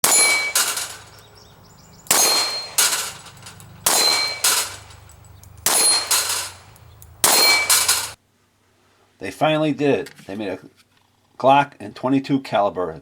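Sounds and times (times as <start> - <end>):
metallic clangs ringing: 0.0 - 8.2.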